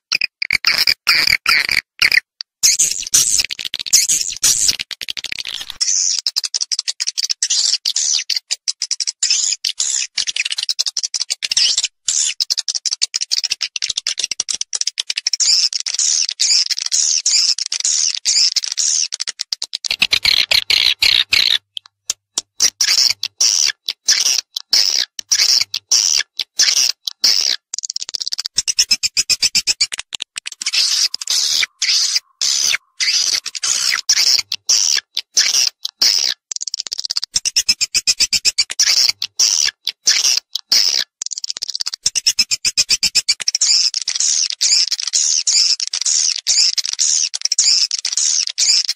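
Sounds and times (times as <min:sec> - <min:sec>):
swiftlet chirps and twittering: 0:28.6 - 0:35.0.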